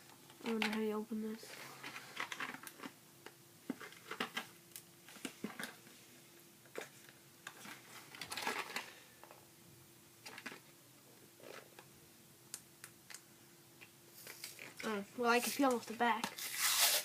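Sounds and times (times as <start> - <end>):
plastic packaging scraping rustle: 14.2 - 17.0.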